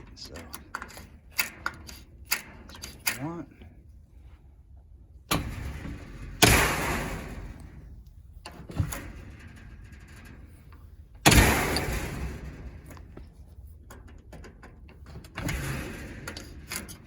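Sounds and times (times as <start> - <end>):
metal door banging shut: 5.3 - 7.9, 8.5 - 10.6, 11.2 - 13.2, 14.0 - 17.0.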